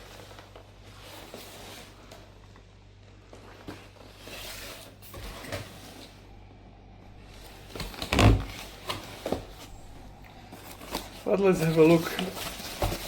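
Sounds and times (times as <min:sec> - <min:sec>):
cardboard box rustling and scraping: 0:03.4 - 0:06.2, 0:07.3 - 0:13.0.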